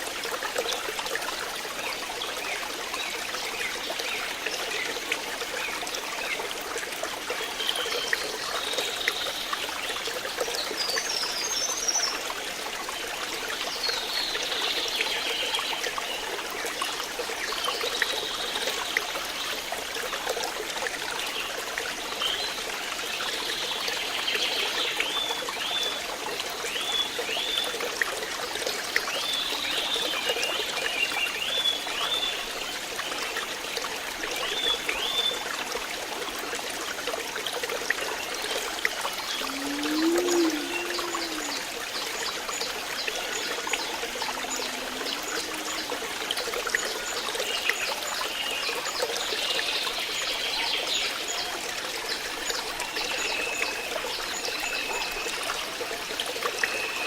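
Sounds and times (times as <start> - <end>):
water trickling: 0.0 - 57.0.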